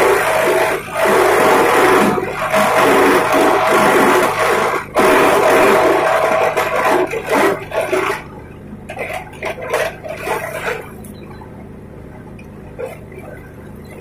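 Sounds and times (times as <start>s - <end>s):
grass chopper machine running: 0.0s - 11.1s.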